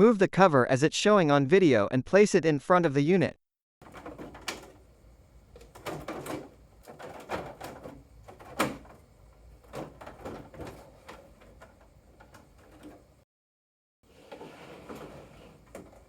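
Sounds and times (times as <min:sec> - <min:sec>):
plastic cover knocking and scraping: 0:03.8 - 0:13.1.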